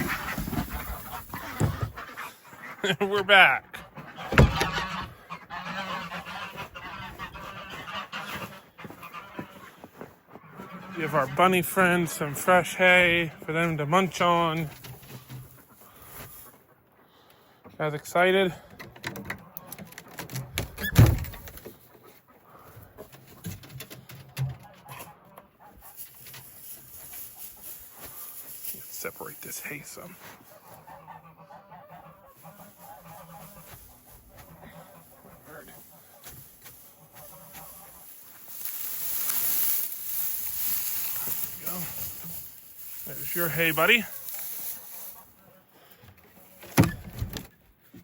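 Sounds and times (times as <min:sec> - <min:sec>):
hay rustling: 0:00.0 - 0:02.7, 0:04.1 - 0:09.6, 0:25.6 - 0:46.8
geese honking: 0:00.0 - 0:18.6, 0:24.3 - 0:47.0.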